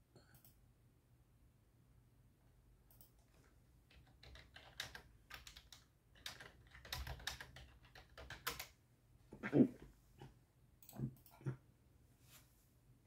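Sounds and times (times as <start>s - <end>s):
rapid clicking and tapping: 3.9s - 8.7s
person hiccuping: 9.4s - 9.8s.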